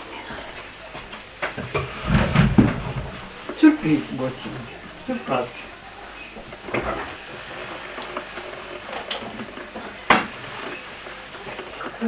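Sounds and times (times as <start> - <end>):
electric kettle hissing: 3.0 - 12.0.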